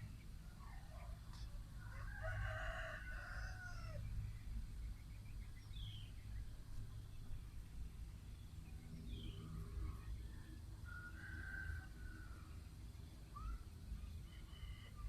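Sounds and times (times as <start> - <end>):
steady low hum: 3.0 - 15.0.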